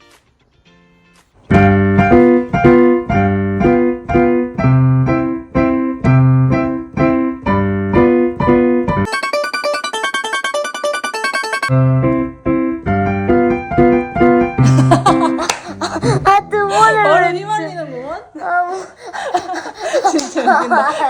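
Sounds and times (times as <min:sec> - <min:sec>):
piano chords with bass notes: 0:01.5 - 0:17.8.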